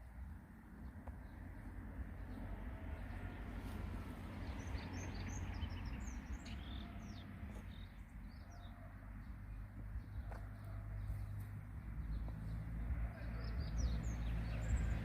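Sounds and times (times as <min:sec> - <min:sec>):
sparrows chirping: 0:00.0 - 0:15.0.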